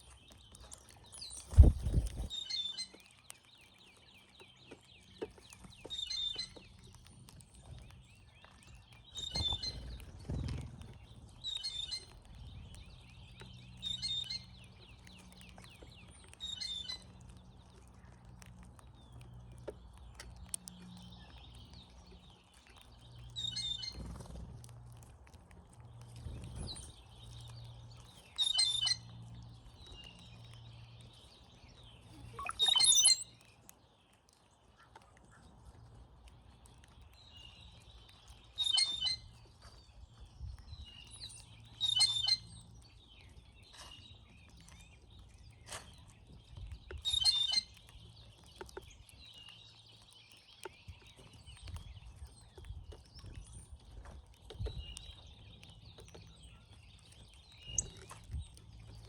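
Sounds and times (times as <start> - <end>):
birds gurgling whistled calls: 0.0 - 3.2, 4.0 - 6.7, 8.0 - 17.1, 23.3 - 24.3, 26.3 - 33.5, 37.3 - 39.5, 40.7 - 53.9, 54.6 - 59.0
soft high bird chatter: 0.0 - 59.0.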